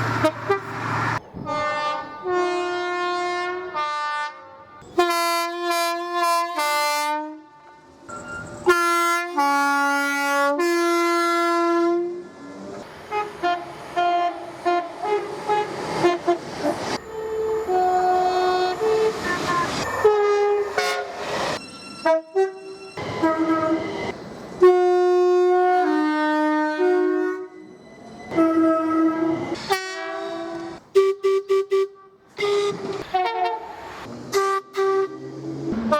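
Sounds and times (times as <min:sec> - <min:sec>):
train horns playing a tune: 0:00.2 - 0:08.0, 0:08.6 - 0:12.2, 0:13.1 - 0:21.3, 0:22.0 - 0:27.6, 0:28.3 - 0:35.9
train running past: 0:06.6 - 0:30.8.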